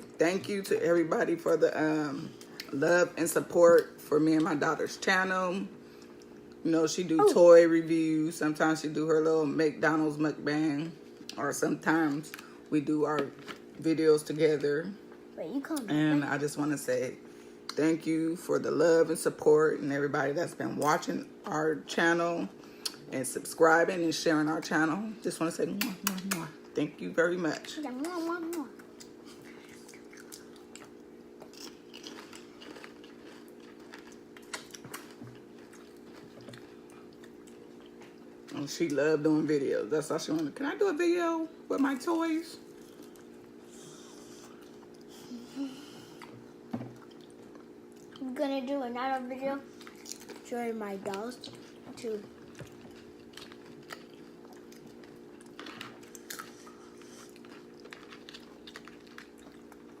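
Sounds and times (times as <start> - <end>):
steady low hum: 0.0 - 60.0
crunchy chips being chewed: 29.0 - 38.2, 49.8 - 50.5, 52.5 - 60.0.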